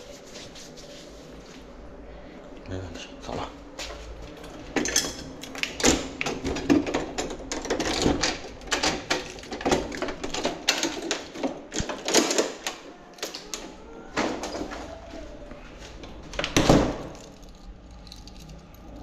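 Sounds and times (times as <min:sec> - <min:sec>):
irregular clicks and rattles: 0:04.3 - 0:14.6.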